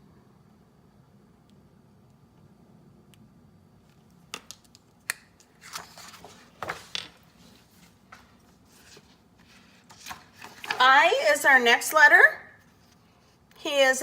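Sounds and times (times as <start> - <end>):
objects rustling and scraping: 5.4 - 10.9.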